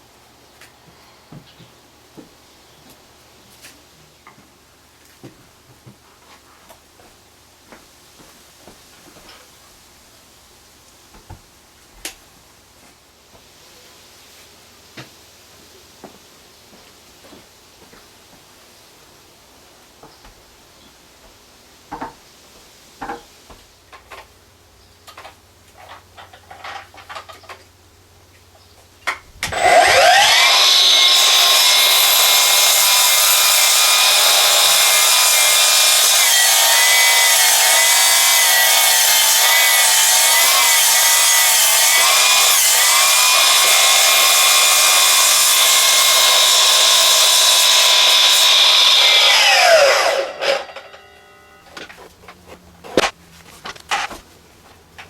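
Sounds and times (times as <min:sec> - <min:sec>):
power saw cutting log: 0:29.4 - 0:54.2.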